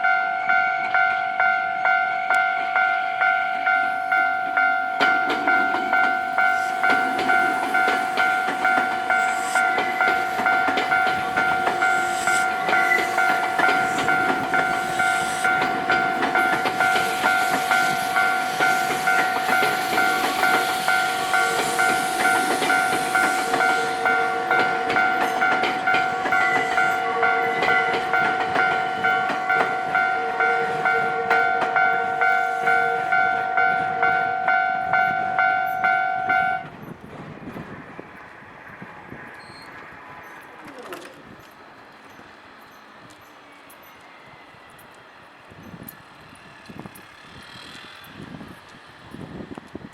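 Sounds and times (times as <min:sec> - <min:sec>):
train wheels rushing: 0:02.5 - 0:49.9
clicking from rail joints: 0:03.6 - 0:34.2, 0:35.0 - 0:49.9.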